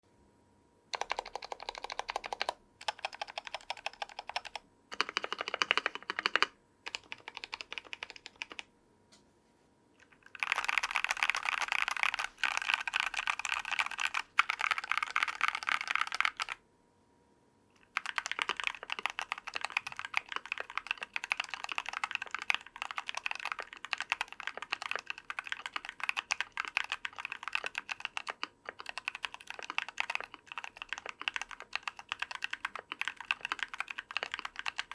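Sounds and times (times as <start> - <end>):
mechanical keyboard typing: 0.9 - 8.7, 10.0 - 16.6, 17.8 - 34.9.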